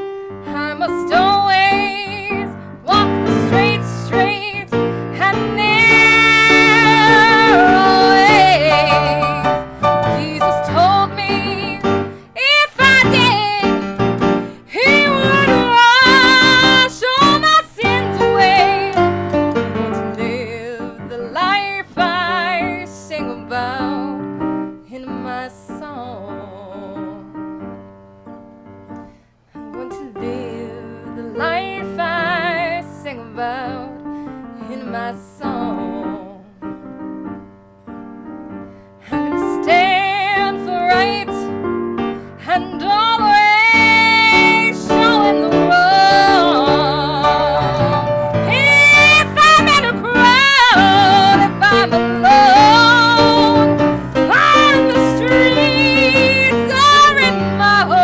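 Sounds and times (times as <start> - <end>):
piano accompaniment: 0.0 - 58.0
person singing gospel: 0.5 - 13.8, 43.8 - 58.0.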